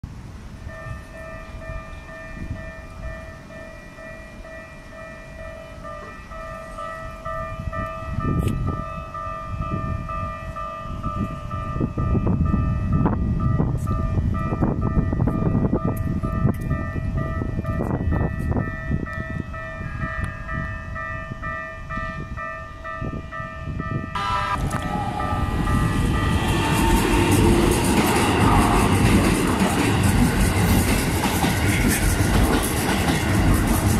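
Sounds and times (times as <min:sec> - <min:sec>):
wind noise on microphone: 0:00.0 - 0:04.6, 0:05.2 - 0:33.9
level crossing warning bell: 0:00.6 - 0:29.8
low rumble: 0:24.2 - 0:32.5
electric train running: 0:24.2 - 0:33.9.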